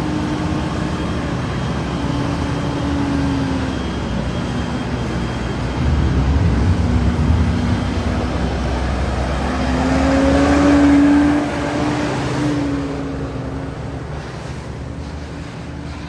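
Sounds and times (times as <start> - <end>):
heavy engine revving: 5.6 - 13.4.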